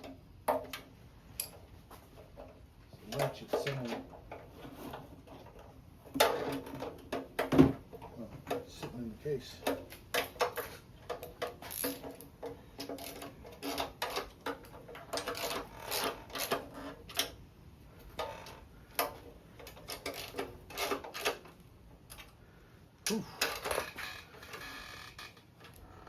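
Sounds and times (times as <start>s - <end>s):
hand ratchet clicking: 9.6s - 17.4s.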